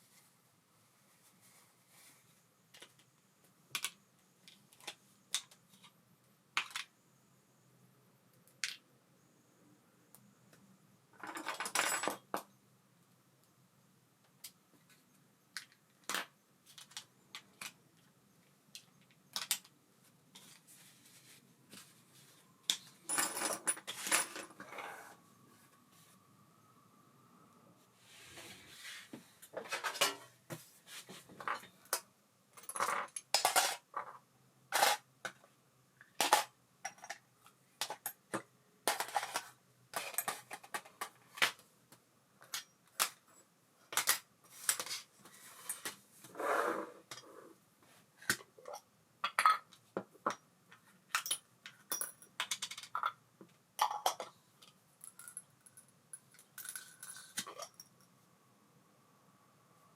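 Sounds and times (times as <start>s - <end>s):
metal parts clicking and clinking: 54.6s - 58.0s.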